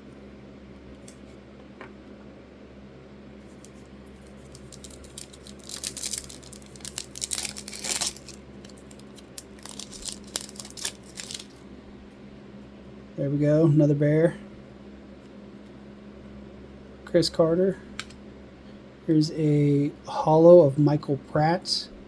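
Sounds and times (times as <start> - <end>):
wrapper tearing and crinkling: 3.6 - 11.6.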